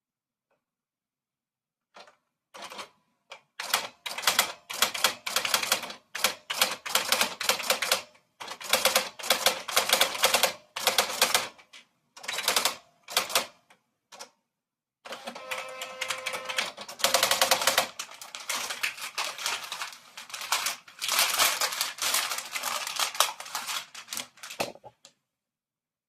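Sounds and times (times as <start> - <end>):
typewriter keys striking: 16.0 - 24.8.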